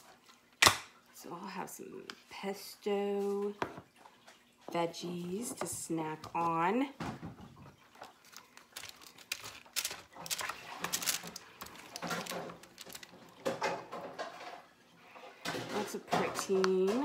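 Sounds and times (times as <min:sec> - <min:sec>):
plastic containers clicking and knocking: 0:07.0 - 0:14.4.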